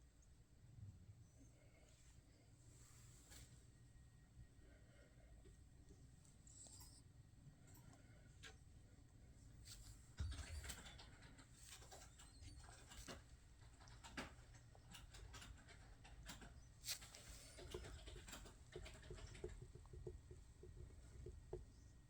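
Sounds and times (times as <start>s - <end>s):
paws tapping and scratching: 9.7s - 22.0s.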